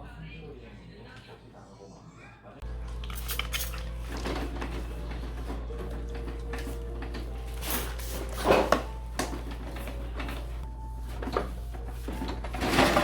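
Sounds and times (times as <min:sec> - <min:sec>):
containers and drawers clattering: 0:02.6 - 0:13.0.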